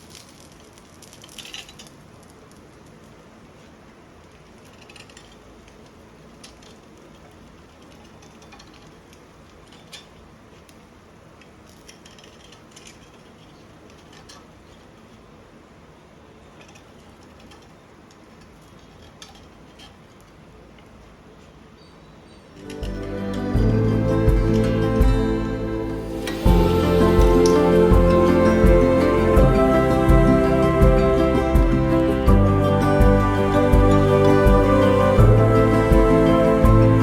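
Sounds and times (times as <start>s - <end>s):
steady low hum: 22.6s - 37.0s.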